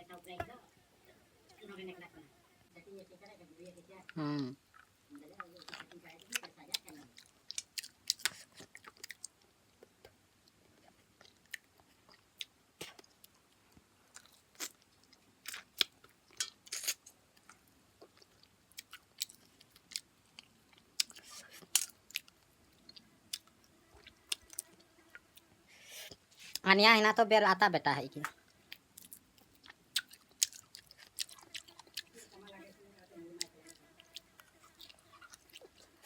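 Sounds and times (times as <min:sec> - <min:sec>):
person chewing food: 0:04.6 - 0:26.6, 0:28.2 - 0:32.3, 0:33.4 - 0:36.0.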